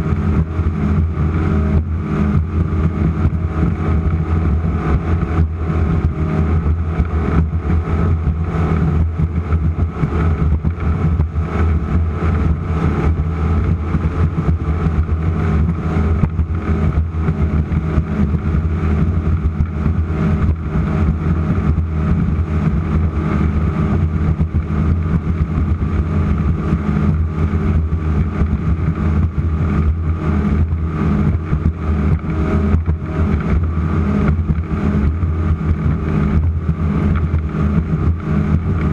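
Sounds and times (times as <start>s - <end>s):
powerboat engines running hard: 0.0s - 38.9s
rushing wind and water: 0.0s - 38.9s.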